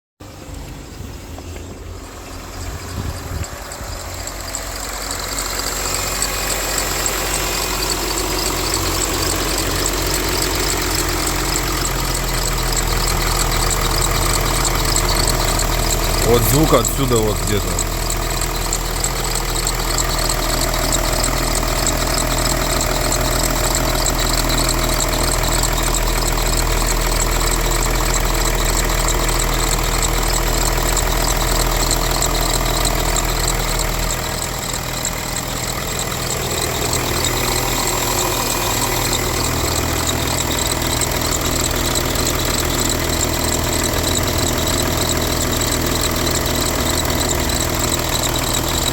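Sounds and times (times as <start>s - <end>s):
diesel engine idling: 0.2s - 48.9s
rapid engine ticking: 0.2s - 48.9s.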